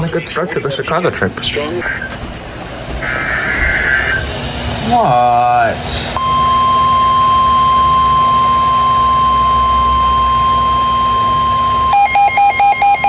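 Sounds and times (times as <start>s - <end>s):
steady warning alarm tone: 1.8s - 13.0s
fast electronic beeping: 6.2s - 13.0s.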